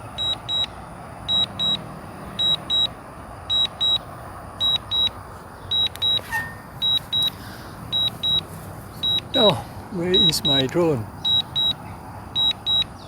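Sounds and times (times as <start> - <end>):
wind: 0.0 - 13.0
remote controller beeping in pairs: 0.2 - 0.7, 1.3 - 1.8, 2.4 - 2.9, 3.5 - 4.0, 4.6 - 11.8, 12.4 - 13.0.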